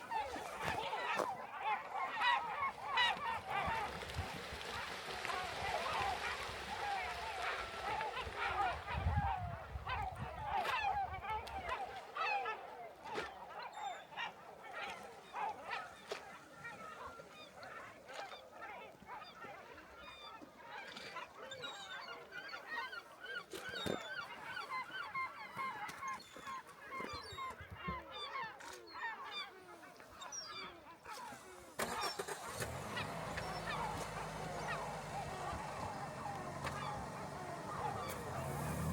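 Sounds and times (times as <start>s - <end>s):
flock of birds calling: 0.0s - 38.9s.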